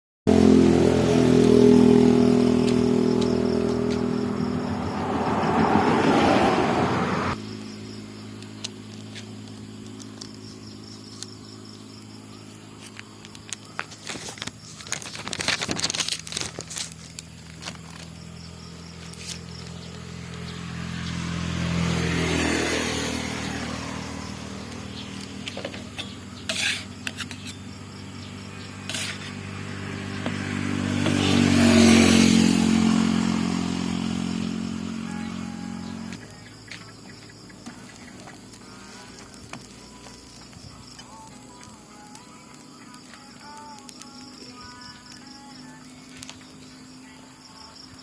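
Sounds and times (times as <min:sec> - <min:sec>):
vehicle passing: 0:00.3 - 0:09.9, 0:17.2 - 0:42.4
vehicle engine running: 0:00.3 - 0:48.0
sharp clicks and scraping clatter: 0:12.8 - 0:18.2.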